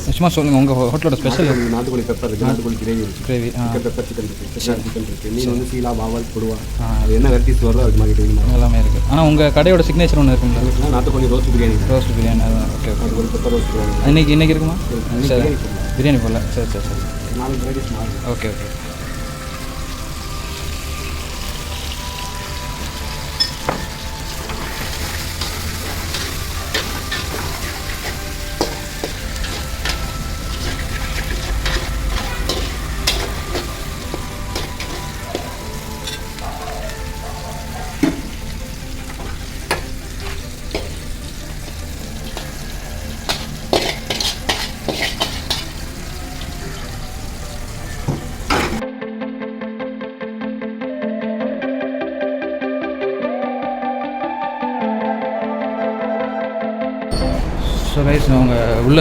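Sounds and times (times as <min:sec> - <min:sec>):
frying sizzle: 0:00.0 - 0:48.8, 0:57.1 - 0:59.0
utensils and dishes clattering: 0:23.0 - 0:48.8.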